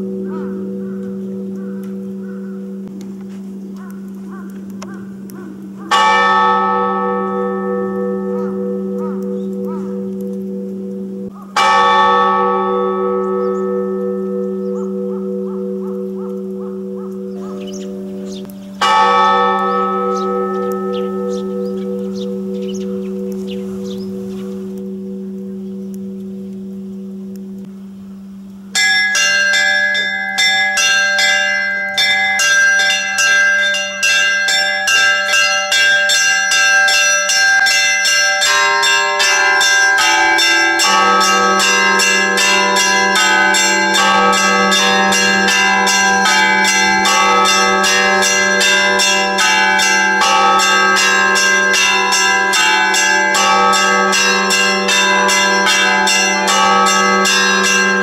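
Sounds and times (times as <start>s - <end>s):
church bells pealing: 0.0s - 27.7s, 28.7s - 58.0s
bell humming: 0.0s - 28.0s, 28.8s - 58.0s
deeper bell ringing: 0.0s - 28.0s, 28.7s - 58.0s.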